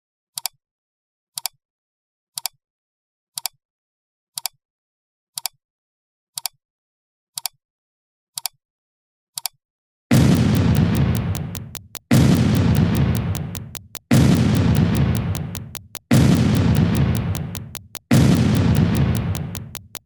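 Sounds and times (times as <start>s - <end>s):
loud dense noise burst: 10.1s - 19.9s
sharp double click: 10.1s - 20.0s.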